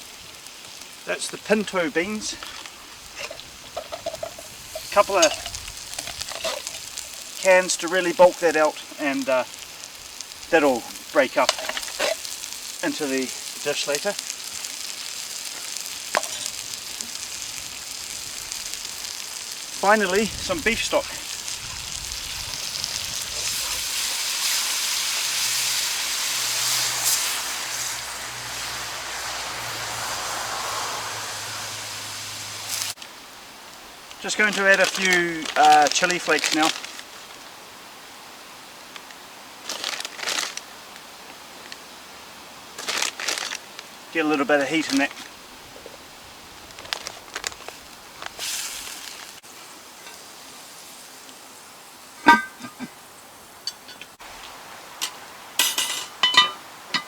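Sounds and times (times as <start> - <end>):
stock sizzling in a hot pan: 0.0 - 57.0
metal utensil clanking on pot: 3.2 - 7.2, 52.2 - 52.9, 53.7 - 54.2, 55.0 - 57.0.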